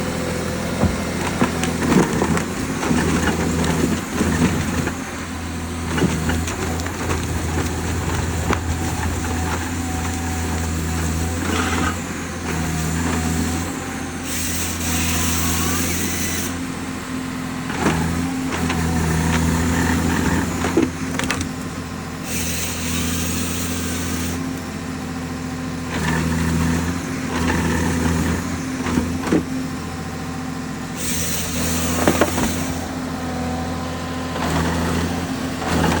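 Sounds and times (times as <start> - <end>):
harvester engine hum: 0.0 - 36.0
sharp knocks and cracks: 5.9 - 13.5.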